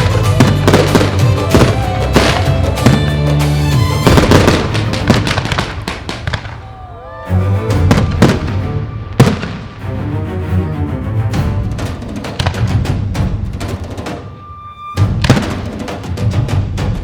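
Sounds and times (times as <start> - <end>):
fireworks bursting and crackling: 0.0 - 9.9, 11.6 - 16.8
music playing: 0.0 - 17.0
loud firework bang: 3.9 - 6.7, 7.8 - 9.8, 12.3 - 15.8.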